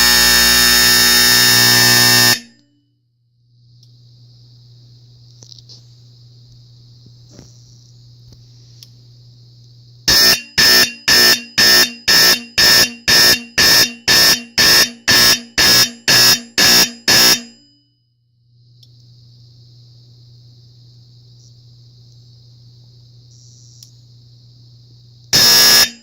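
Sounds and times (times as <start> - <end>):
fire alarm horn pulsing: 0.0 - 2.8, 10.1 - 17.8, 25.3 - 26.0.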